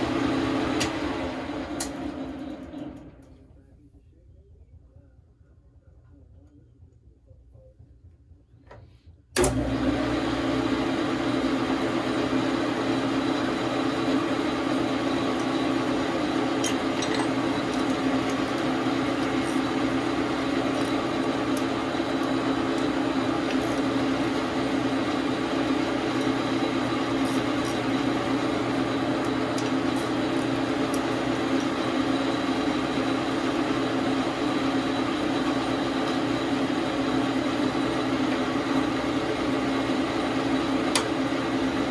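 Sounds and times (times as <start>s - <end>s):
lathe switching on: 0.0s - 3.3s, 9.4s - 41.9s
lathe motor and gearing running: 9.4s - 41.9s.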